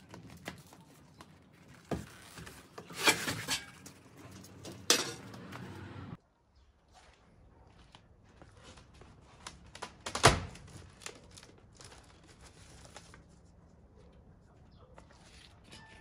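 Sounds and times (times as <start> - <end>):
packaging rustling and crumpling: 0.0 - 3.4, 9.3 - 13.5.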